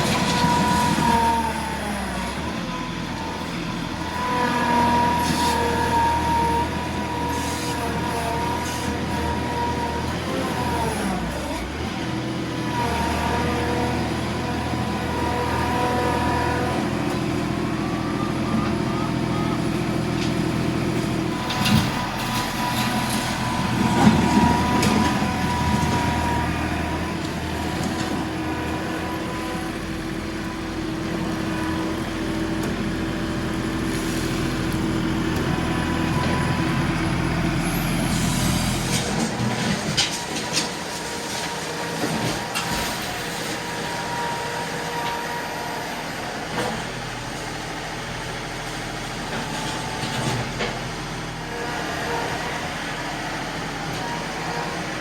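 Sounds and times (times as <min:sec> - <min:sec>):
tractor diesel engine under load: 0:00.0 - 0:55.0.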